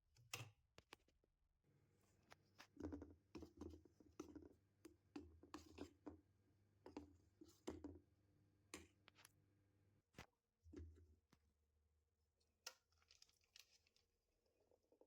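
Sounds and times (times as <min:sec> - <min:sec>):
objects scraping and tapping: 0:05.2 - 0:06.2.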